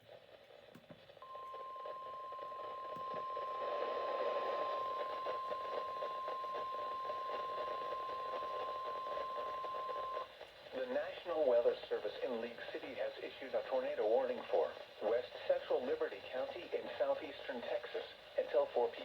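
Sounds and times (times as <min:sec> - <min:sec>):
radio hiss: 0:00.1 - 0:19.0
steady high-pitched warning tone: 0:01.2 - 0:10.3.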